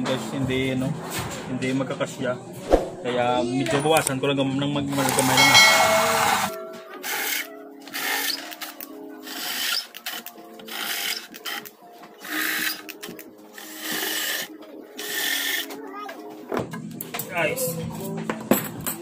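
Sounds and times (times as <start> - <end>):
background music: 0.0 - 19.0
tool rasping strokes shaving material: 7.1 - 15.8.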